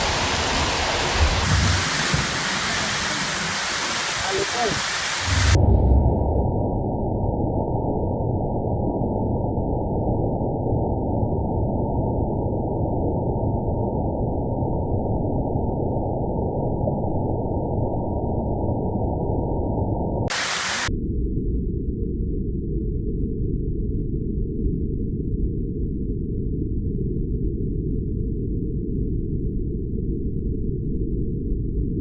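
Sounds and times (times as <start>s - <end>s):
slowed hail rumbling hiss: 0.0s - 6.5s, 20.3s - 20.9s.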